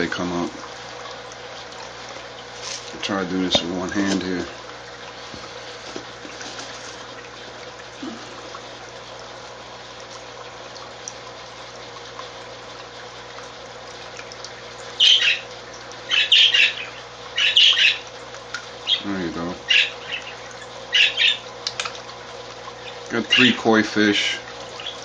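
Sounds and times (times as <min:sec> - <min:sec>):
running water: 0:00.0 - 0:25.0
parakeets squawking: 0:15.0 - 0:15.5, 0:16.1 - 0:18.1, 0:18.8 - 0:21.5, 0:22.8 - 0:23.7, 0:24.8 - 0:25.0.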